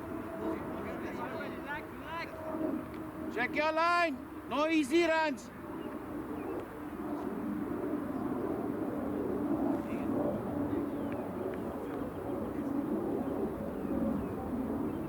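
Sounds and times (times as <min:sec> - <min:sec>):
faint indistinct voices: 0:00.0 - 0:02.9, 0:09.6 - 0:15.0
outdoor background hum: 0:00.0 - 0:15.0.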